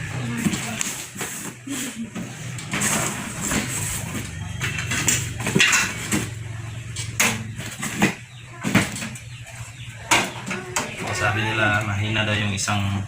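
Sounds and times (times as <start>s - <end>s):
metal stove parts clattering: 2.6s - 9.4s.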